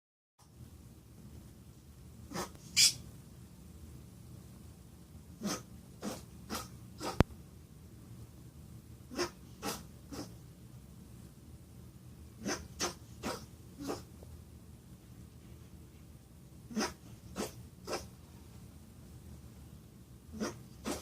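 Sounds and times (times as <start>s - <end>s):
rabbit sneezing: 2.3s - 3.0s, 5.4s - 7.3s, 9.1s - 10.4s, 12.4s - 14.1s, 16.7s - 18.2s, 20.3s - 21.0s.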